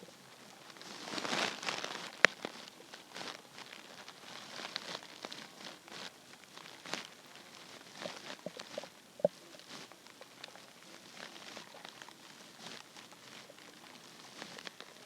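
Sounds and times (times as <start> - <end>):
stomach gurgling: 4.3 - 15.0.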